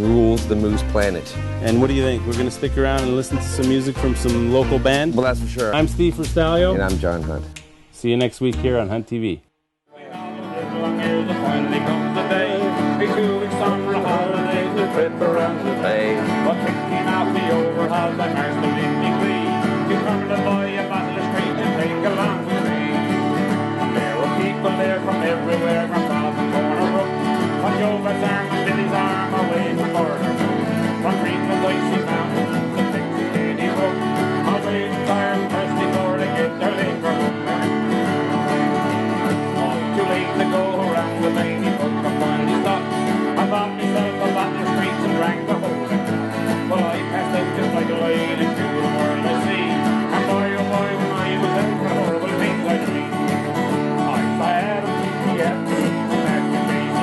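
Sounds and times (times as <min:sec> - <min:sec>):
country bluegrass band playing: 0:00.0 - 0:09.0, 0:10.0 - 0:57.0
plucked strings: 0:00.0 - 0:09.0.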